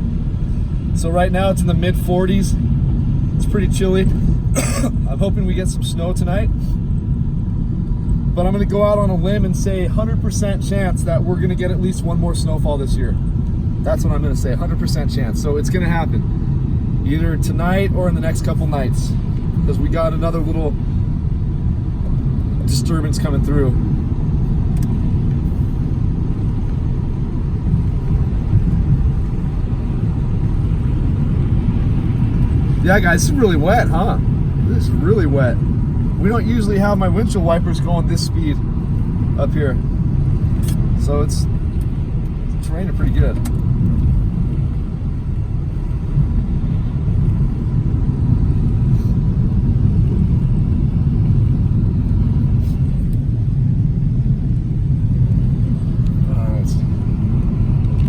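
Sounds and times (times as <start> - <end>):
car driving on wet road: 0.0 - 58.0.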